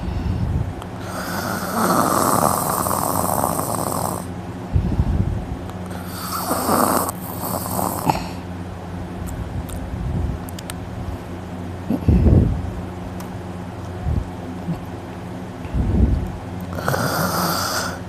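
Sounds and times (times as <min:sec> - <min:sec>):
person snoring loudly: 0:01.0 - 0:04.3, 0:05.9 - 0:08.4, 0:16.7 - 0:18.0
low rumble: 0:04.7 - 0:05.6, 0:15.6 - 0:16.5.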